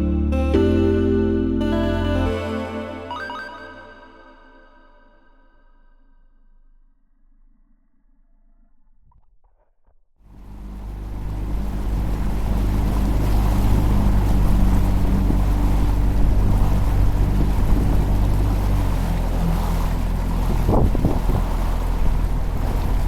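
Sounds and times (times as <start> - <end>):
low even hum: 10.3 - 23.0
wind and water rushing: 10.3 - 23.0.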